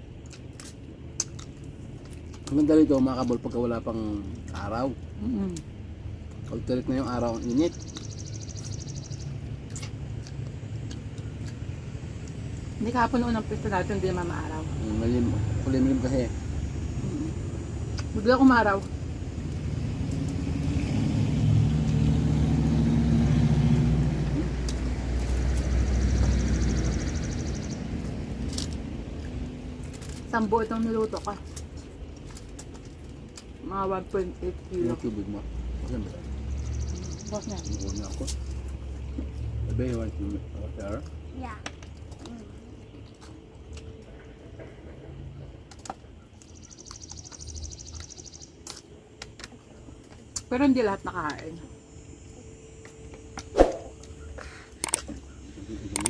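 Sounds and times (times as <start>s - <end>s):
vehicle engine running: 0.0s - 45.7s, 49.5s - 56.0s
clicks and taps of eating: 0.2s - 3.4s, 9.6s - 12.5s, 38.0s - 44.8s, 45.6s - 50.5s.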